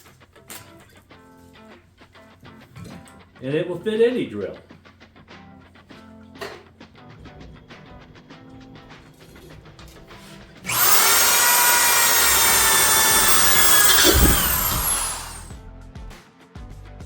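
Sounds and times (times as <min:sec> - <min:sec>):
electric drill whining: 0:10.7 - 0:15.5.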